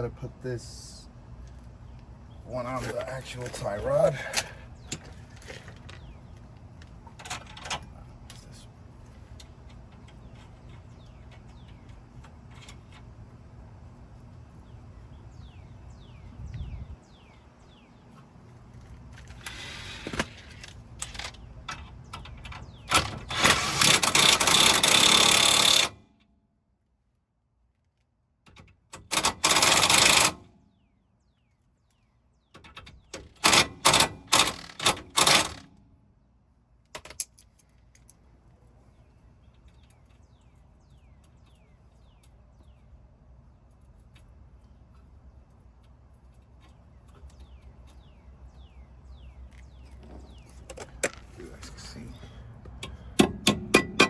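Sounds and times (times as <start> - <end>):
rapid mechanical rattling: 19.4 - 26.0, 28.9 - 30.5, 33.2 - 35.7.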